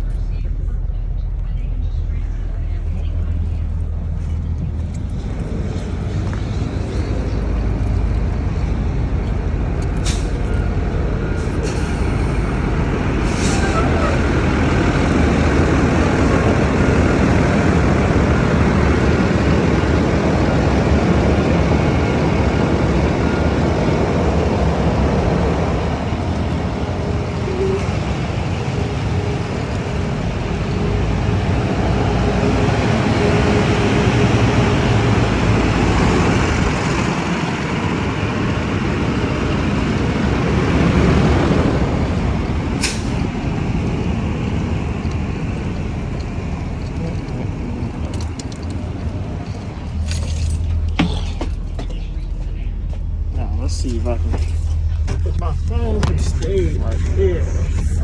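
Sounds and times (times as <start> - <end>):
bus engine and road noise: 0.0 - 58.0.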